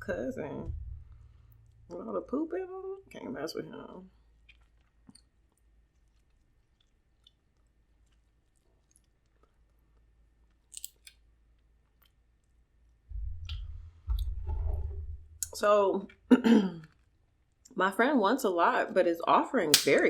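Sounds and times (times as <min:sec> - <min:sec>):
low rumble: 0:00.0 - 0:03.0, 0:13.1 - 0:15.8
person chewing food: 0:04.2 - 0:13.6.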